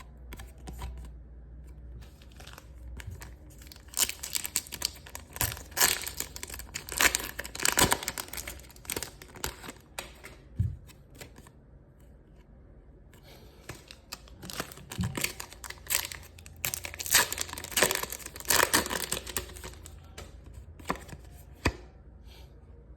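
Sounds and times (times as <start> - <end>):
card packaging crinkling and tearing: 2.0 - 10.4, 13.7 - 21.3.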